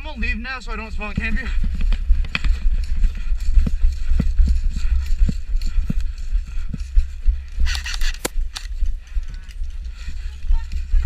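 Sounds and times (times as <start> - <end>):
footsteps thumping: 1.0 - 9.5.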